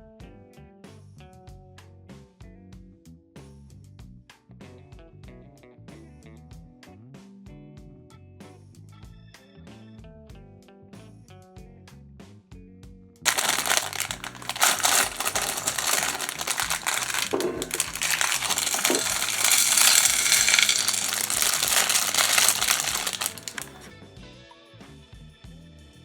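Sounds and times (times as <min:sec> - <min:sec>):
plastic bag crinkling: 0:13.3 - 0:23.9
plastic bricks clattering: 0:13.3 - 0:23.9.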